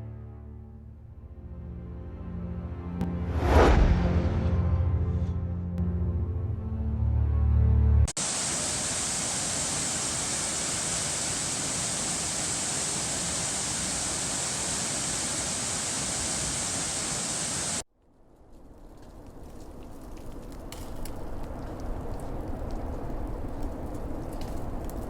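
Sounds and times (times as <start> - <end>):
waterfall rushing: 8.2 - 17.8.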